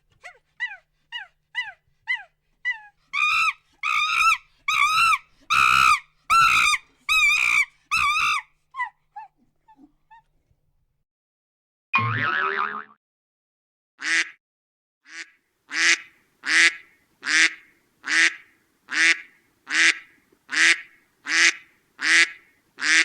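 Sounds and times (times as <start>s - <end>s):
dog yelping: 0.0s - 10.3s.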